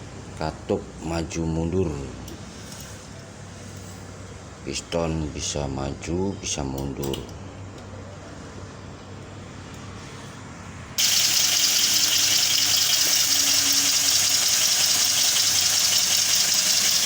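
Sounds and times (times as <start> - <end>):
steam engine hissing: 11.0 - 17.0.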